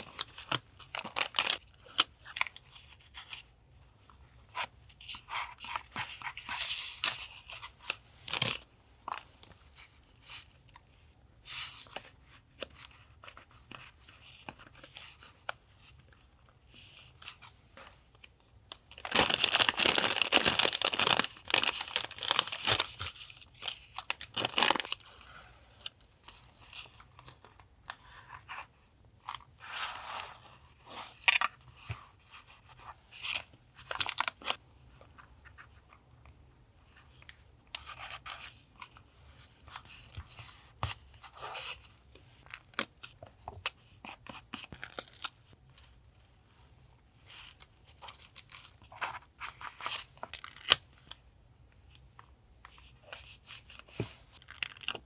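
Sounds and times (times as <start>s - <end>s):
paper rustling and tearing: 19.0s - 23.1s.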